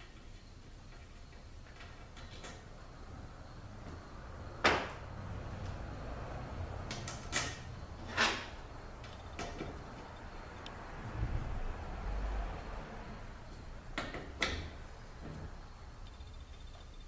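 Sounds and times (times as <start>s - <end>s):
knocks and clicks of metal parts: 6.9s - 9.8s, 14.0s - 17.0s.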